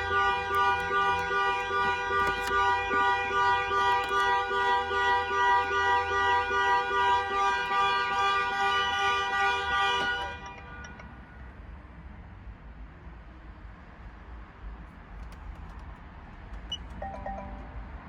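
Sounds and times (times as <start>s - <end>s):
car alarm horn-like tone: 0.0s - 11.1s.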